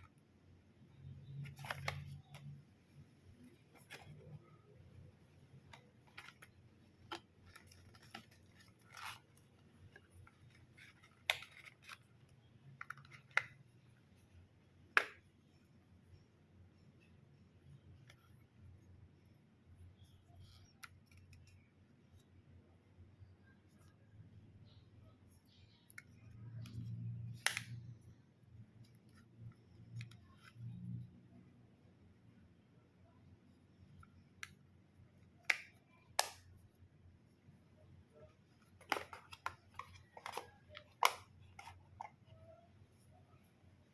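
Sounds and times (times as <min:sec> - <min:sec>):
hands handling packaging: 0:05.4 - 0:13.6, 0:38.5 - 0:42.7.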